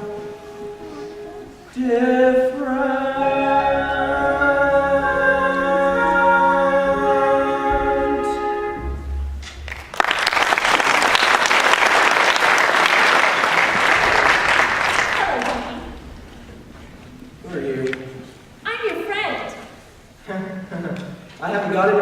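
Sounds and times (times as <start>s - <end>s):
singing with instrumental accompaniment: 0.0s - 9.4s
audience applause: 9.5s - 16.1s.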